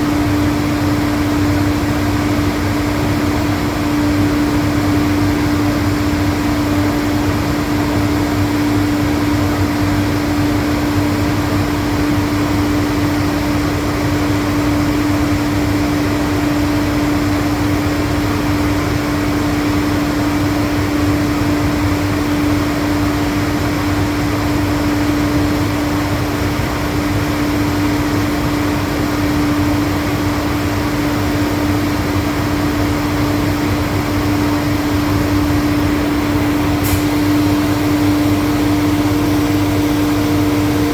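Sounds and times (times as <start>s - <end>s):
air compressor humming: 0.0s - 40.9s.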